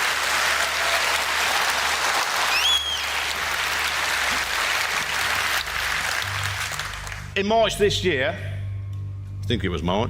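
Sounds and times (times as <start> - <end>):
audience applauding: 0.0 - 7.4
high whistle-like call: 2.5 - 3.1.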